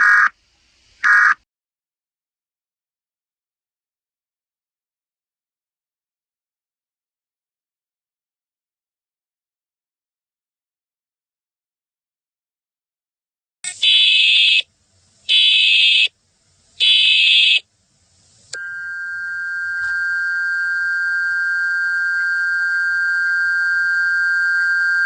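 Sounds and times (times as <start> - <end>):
data header bursts: 13.7 - 14.6, 15.3 - 16.1, 16.8 - 17.6.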